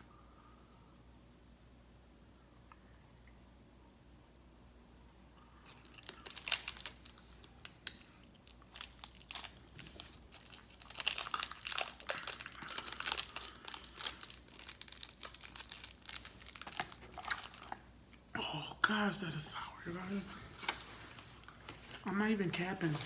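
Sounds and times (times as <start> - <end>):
plastic wrapper crinkling: 5.6 - 18.2, 20.1 - 23.0.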